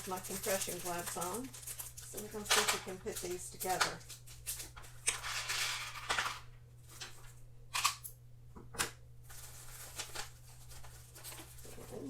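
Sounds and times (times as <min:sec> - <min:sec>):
packaging rustles and clicks: 0:09.3 - 0:12.0.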